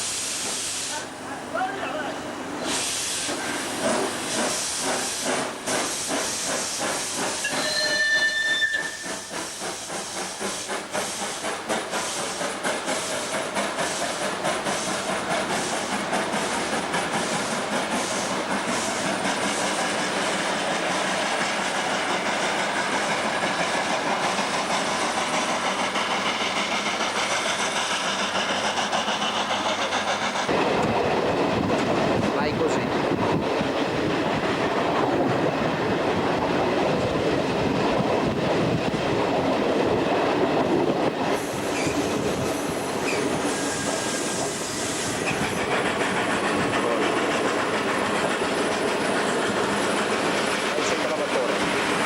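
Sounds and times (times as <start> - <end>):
steam hissing: 0.0 - 1.7, 2.3 - 33.4, 35.2 - 52.0
locomotive whistle blast: 7.4 - 9.3.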